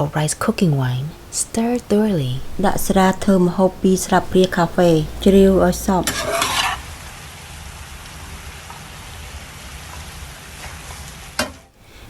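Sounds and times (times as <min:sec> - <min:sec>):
chicken sizzling in oil: 0:02.4 - 0:11.5.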